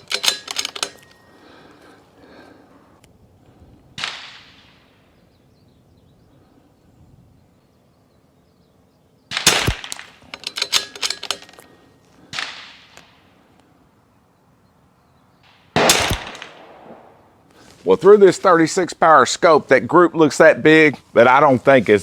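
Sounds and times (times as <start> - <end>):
rifle bolt clicks and knocks: 0.0 - 1.2, 9.5 - 11.8
rifle shot crack: 3.9 - 5.0, 9.3 - 10.2, 12.2 - 13.3, 15.4 - 17.3.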